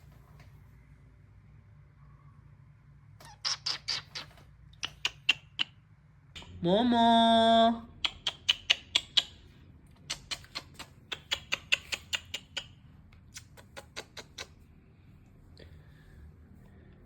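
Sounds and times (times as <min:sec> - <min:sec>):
cat chewing with teeth clicks: 0:10.0 - 0:12.8.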